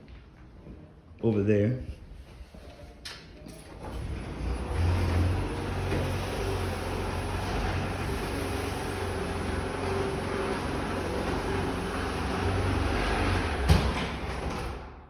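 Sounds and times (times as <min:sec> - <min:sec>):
garage door opener motor whining: 0:03.6 - 0:15.0.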